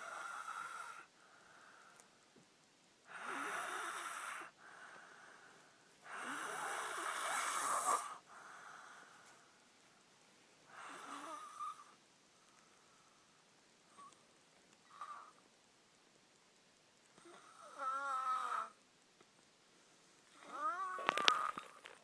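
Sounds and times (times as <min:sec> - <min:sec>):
person snoring: 0:03.1 - 0:04.5, 0:06.0 - 0:08.2, 0:10.7 - 0:12.0, 0:17.2 - 0:18.8, 0:20.4 - 0:21.8.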